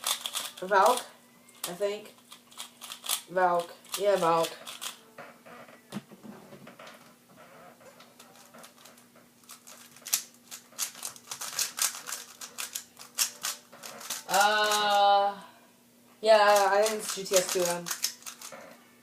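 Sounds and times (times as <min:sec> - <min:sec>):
puzzle cube layers clicking: 0:16.5 - 0:18.5.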